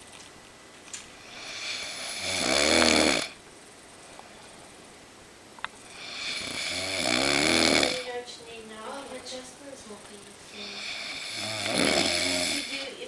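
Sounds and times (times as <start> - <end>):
man snoring loudly: 1.2 - 3.4, 5.9 - 8.1, 10.6 - 12.9.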